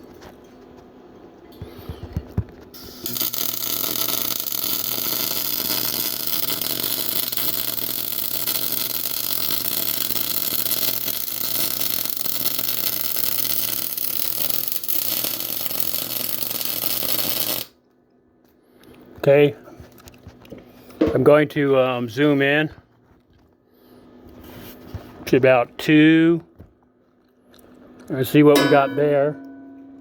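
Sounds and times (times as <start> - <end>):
welding arc crackling hiss: 2.7 - 17.8
low hum: 28.5 - 30.0.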